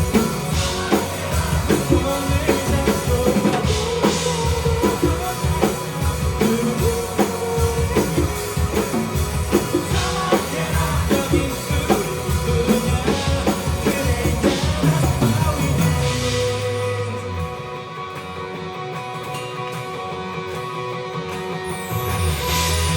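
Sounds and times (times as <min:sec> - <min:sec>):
drum kit steady beat: 0:00.0 - 0:17.5
live rock band playing: 0:00.0 - 0:22.9.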